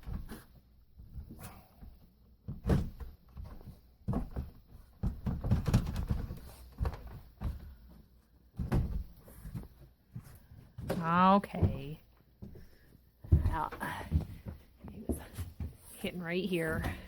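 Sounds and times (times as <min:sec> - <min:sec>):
window frame knocking and thumping: 0:05.0 - 0:07.1.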